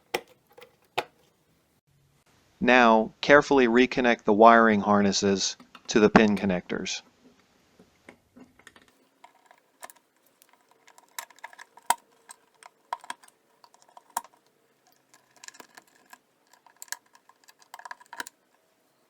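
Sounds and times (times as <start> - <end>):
plastic connectors clicking: 8.7 - 18.6.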